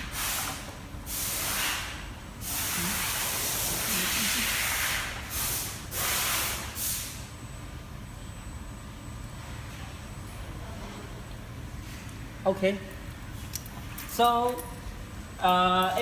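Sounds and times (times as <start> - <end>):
compressed air hissing: 0.0 - 7.3.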